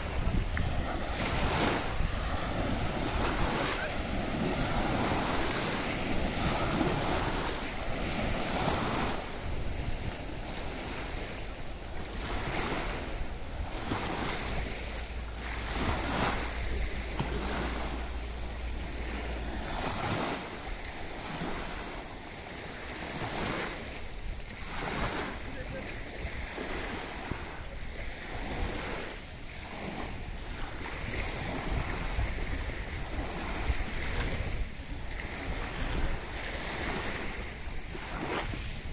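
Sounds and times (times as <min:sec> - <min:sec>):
wind buffeting microphone: 0:00.0 - 0:38.9
steady low rumble: 0:12.9 - 0:22.0.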